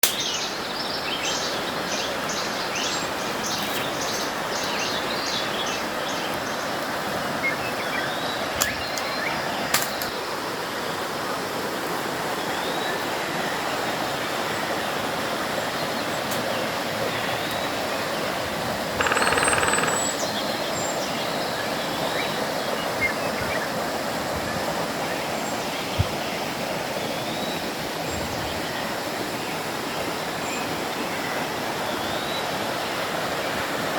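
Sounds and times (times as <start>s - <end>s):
stream water rushing: 0.0s - 33.9s
sharp clicks: 19.0s - 20.2s
birds chirping: 19.0s - 23.6s.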